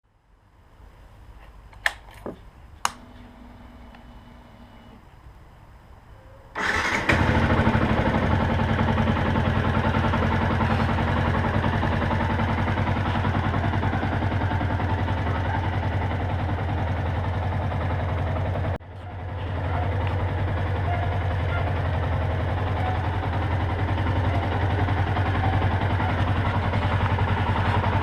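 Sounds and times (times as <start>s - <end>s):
motorcycle starter whir: 6.6s - 14.4s
motorcycle engine idling: 6.6s - 28.0s.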